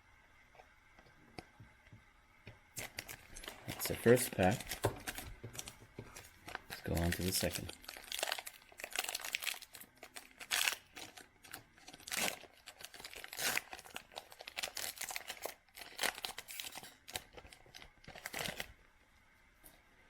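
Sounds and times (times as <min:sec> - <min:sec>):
wrapper torn and crinkled: 0:02.8 - 0:18.8.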